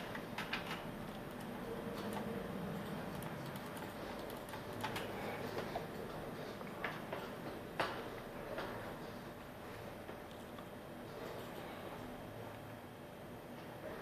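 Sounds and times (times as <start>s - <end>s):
low steady hum: 0.0s - 14.0s
keyboard keystrokes: 0.1s - 5.1s.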